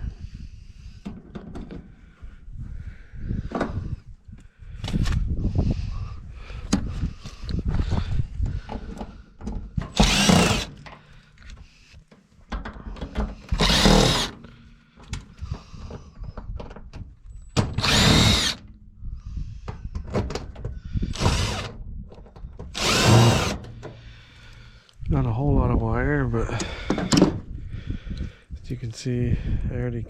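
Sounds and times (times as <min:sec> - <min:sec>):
power drill whirring: 0:09.9 - 0:10.9, 0:13.3 - 0:14.6, 0:17.6 - 0:18.7, 0:21.1 - 0:21.8, 0:22.7 - 0:23.8.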